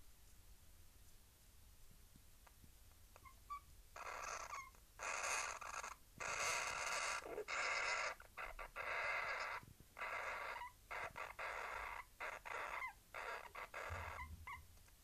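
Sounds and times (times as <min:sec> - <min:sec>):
hamster raspy buzzing noises: 0:03.2 - 0:14.6
hamster high squeaks: 0:03.2 - 0:14.7.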